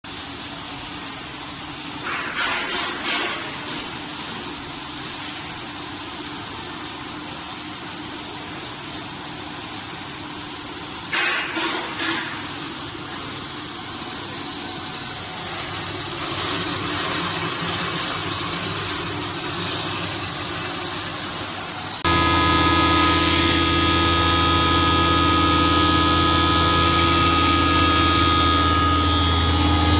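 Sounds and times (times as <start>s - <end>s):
electric grinder whirring: 22.0s - 29.9s.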